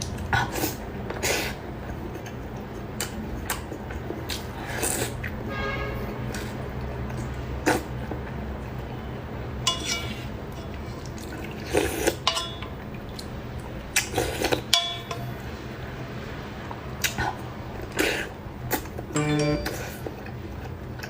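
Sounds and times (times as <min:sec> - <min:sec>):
utensil clinking against bowl: 0:09.6 - 0:11.1, 0:12.2 - 0:12.8, 0:14.7 - 0:15.4.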